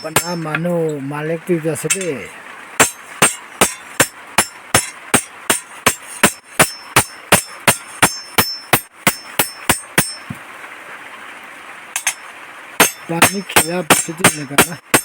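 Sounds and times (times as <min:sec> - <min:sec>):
hammer striking blade on anvil: 0:00.0 - 0:00.6, 0:02.8 - 0:10.4, 0:12.0 - 0:12.2, 0:12.8 - 0:15.0.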